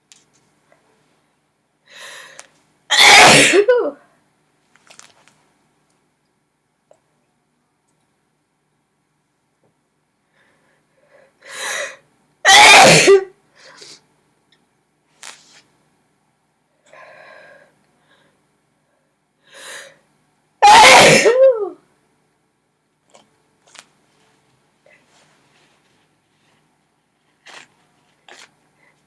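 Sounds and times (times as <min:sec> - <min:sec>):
woman sneezing: 0:02.9 - 0:04.0, 0:12.5 - 0:13.3, 0:20.6 - 0:21.8
faint breathing: 0:16.9 - 0:18.4.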